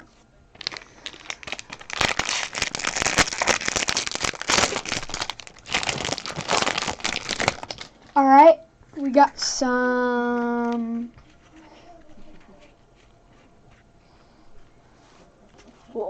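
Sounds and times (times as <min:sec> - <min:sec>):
foil wrapper crinkling: 0:00.5 - 0:08.2.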